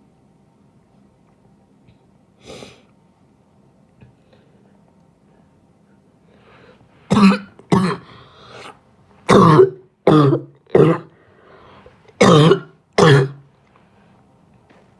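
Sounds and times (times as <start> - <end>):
person coughing: 7.1 - 8.7, 9.3 - 11.1, 12.2 - 13.4.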